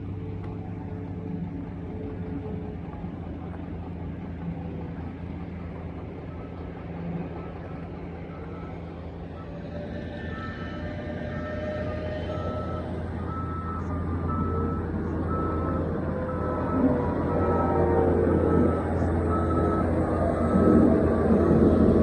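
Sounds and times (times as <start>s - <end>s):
low rumble of vehicle engines: 0.0s - 22.0s.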